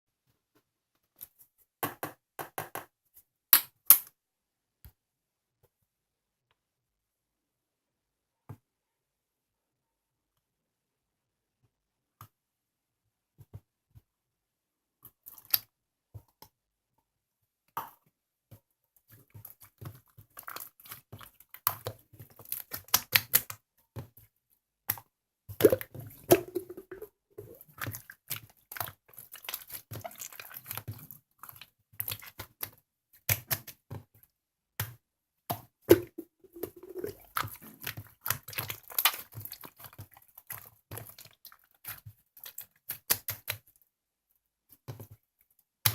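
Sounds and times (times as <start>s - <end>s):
slime squishing and popping: 25.5s - 32.7s, 35.9s - 43.6s.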